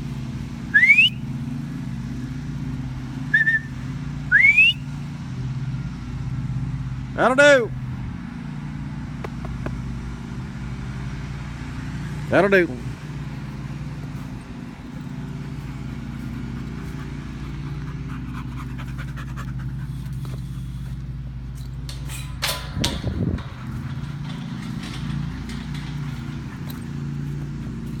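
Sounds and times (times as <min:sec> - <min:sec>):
steady engine hum: 0:00.0 - 0:28.0
dog panting: 0:14.1 - 0:21.2, 0:23.4 - 0:28.0.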